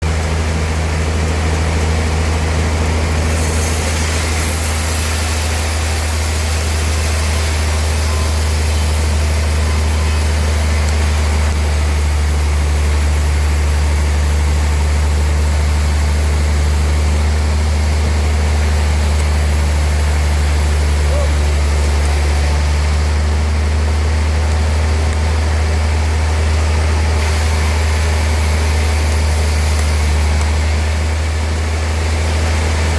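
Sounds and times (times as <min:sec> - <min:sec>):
sawmill machinery drone: 0:00.0 - 0:32.9.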